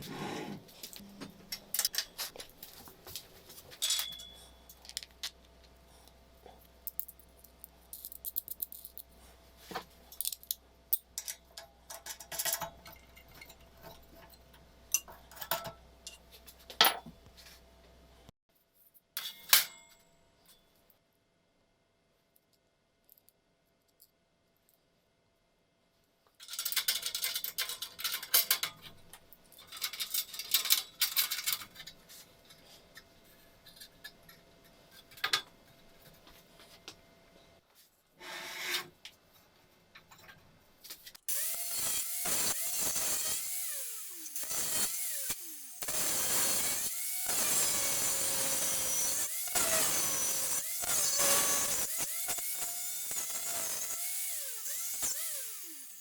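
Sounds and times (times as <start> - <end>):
angle grinder cutting metal: 41.3 - 56.0.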